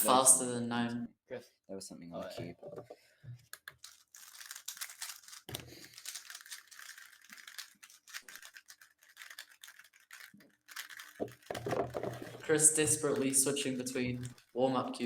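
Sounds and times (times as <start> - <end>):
plastic puzzle cube clicking: 3.4 - 14.5.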